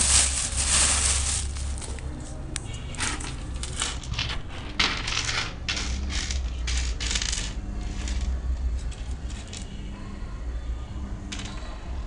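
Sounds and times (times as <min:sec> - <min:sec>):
stones and shells clattering: 0:00.0 - 0:02.1.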